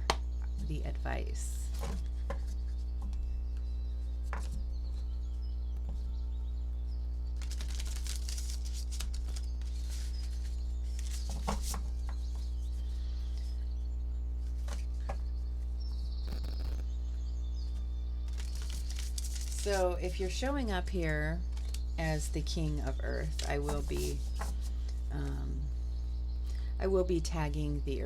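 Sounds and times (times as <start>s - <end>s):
cards being shuffled: 7.4s - 12.5s, 18.3s - 20.1s, 23.2s - 24.7s.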